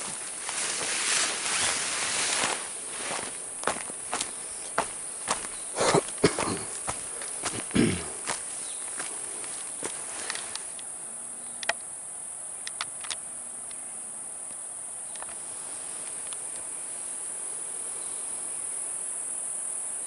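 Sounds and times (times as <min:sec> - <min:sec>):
insect trilling: 0:00.0 - 0:11.7
sharp clicks: 0:11.6 - 0:11.9.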